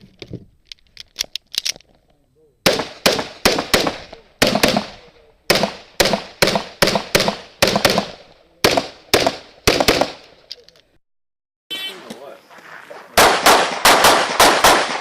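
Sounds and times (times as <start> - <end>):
pistol shots with echo: 2.6 - 10.2, 13.2 - 15.0.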